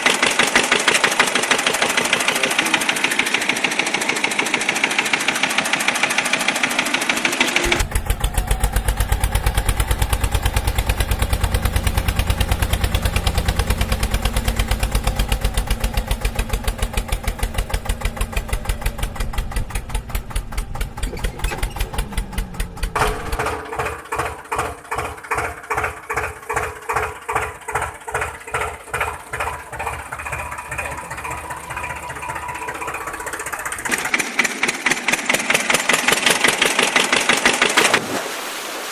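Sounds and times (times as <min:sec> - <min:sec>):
different engine sound: 0:00.0 - 0:38.0
tractor engine chugging: 0:00.0 - 0:38.0.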